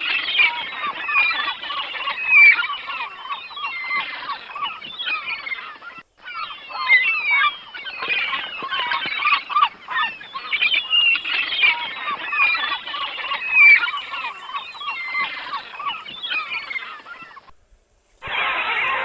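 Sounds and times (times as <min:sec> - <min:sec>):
chorus of birds chirping: 0:00.0 - 0:17.6, 0:18.2 - 0:19.0.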